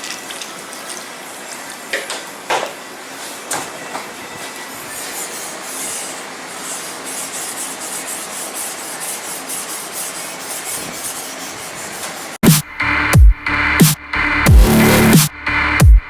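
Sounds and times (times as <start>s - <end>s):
sandpaper rubbing back and forth: 4.7s - 12.4s.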